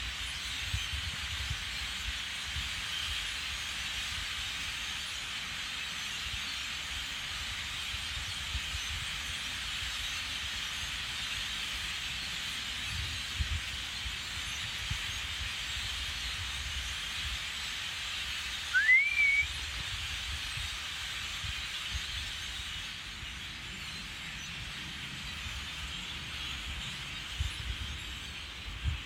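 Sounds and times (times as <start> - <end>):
bird whistled call: 18.7 - 19.6.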